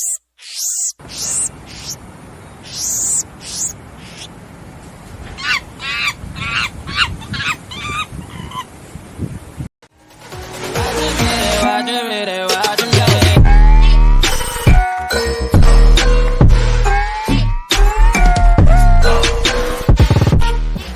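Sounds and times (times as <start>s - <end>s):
monkey calls: 0.0s - 2.0s, 2.6s - 4.3s, 5.4s - 8.7s.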